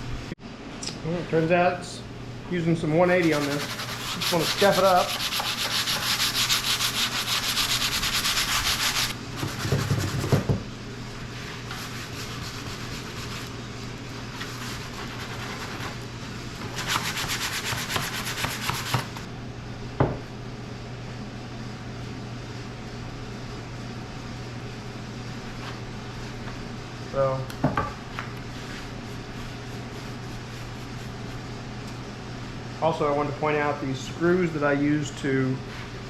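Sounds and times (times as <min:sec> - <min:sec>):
sandpaper sanding wood: 0:03.0 - 0:10.4, 0:11.7 - 0:13.6, 0:14.4 - 0:16.0, 0:16.6 - 0:19.3, 0:28.6 - 0:31.4.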